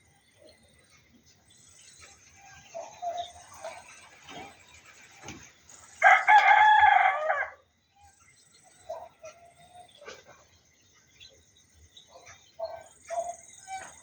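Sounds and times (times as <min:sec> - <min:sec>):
rooster crowing: 0:06.0 - 0:07.6.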